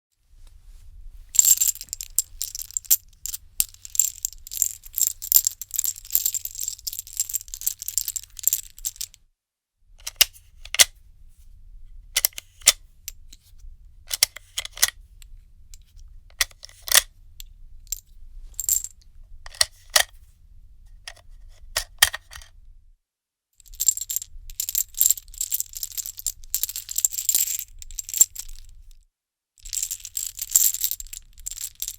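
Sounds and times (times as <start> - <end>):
metal cartridges clinking: 1.4 - 9.2, 18.6 - 18.9, 23.7 - 28.6, 29.6 - 31.9.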